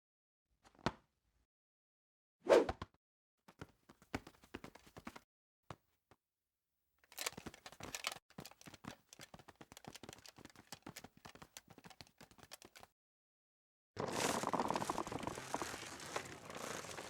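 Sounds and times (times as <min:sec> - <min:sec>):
rapid irregular clicks and taps: 0:07.1 - 0:12.9
rustling: 0:14.0 - 0:17.0.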